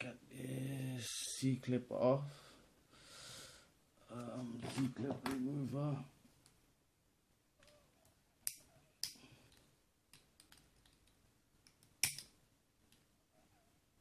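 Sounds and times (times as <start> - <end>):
small metal tool clicks: 8.4 - 12.3.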